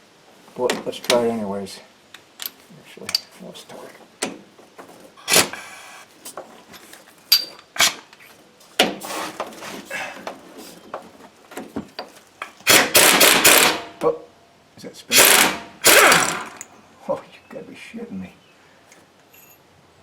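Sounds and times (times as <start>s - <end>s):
impact wrench hammering: 12.7s - 13.9s, 15.2s - 16.7s.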